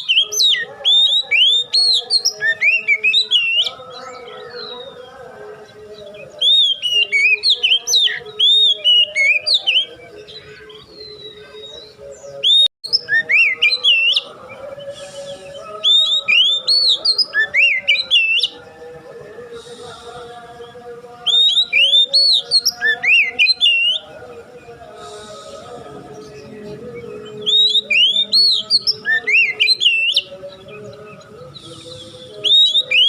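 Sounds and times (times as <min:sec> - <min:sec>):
bird singing whistled phrases: 0:00.0 - 0:05.0, 0:06.2 - 0:18.6, 0:21.2 - 0:24.1, 0:27.0 - 0:33.0.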